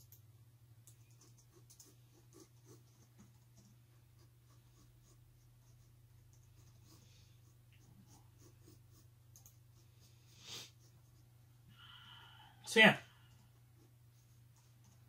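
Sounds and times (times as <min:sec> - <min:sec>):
low electrical hum: 0:00.0 - 0:15.0
keyboard and mouse clicking: 0:00.8 - 0:01.9.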